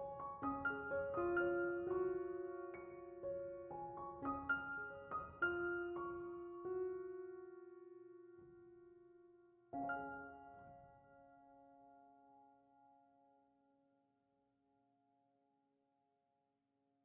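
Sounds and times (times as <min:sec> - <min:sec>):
soft piano music: 0:00.0 - 0:13.6.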